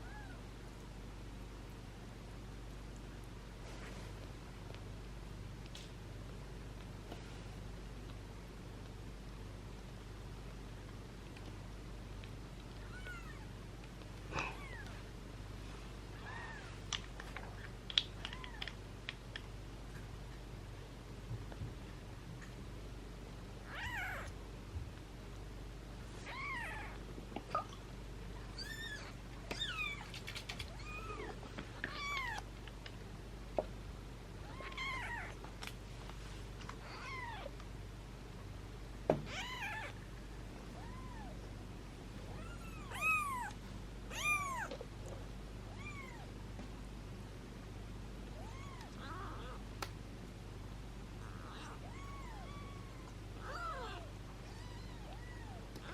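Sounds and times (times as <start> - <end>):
kittens mewing: 23.7 - 24.3, 42.3 - 44.9, 48.4 - 49.6, 51.2 - 55.9.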